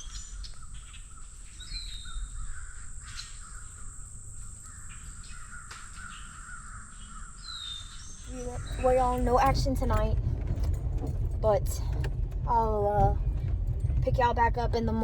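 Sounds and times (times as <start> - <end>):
birds calling harshly: 0.0 - 10.0.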